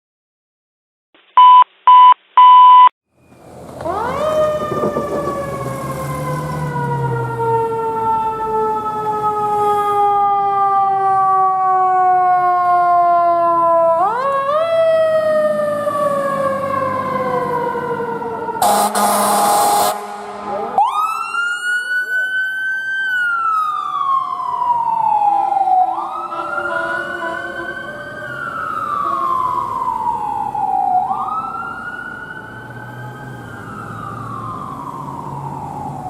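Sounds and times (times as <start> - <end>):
loud beeps: 1.4 - 2.9
engine and traffic rumble: 3.1 - 36.0
fire engine siren: 3.2 - 36.0.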